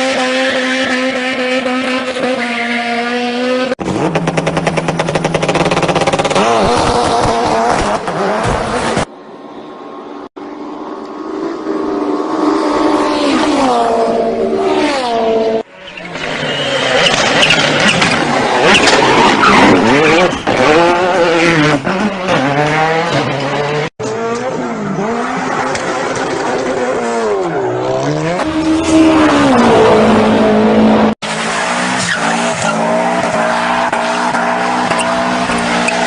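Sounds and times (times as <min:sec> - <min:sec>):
tyres skidding and squealing: 0:00.0 - 0:10.2, 0:11.3 - 0:36.0
rally car engine revving: 0:11.5 - 0:36.0.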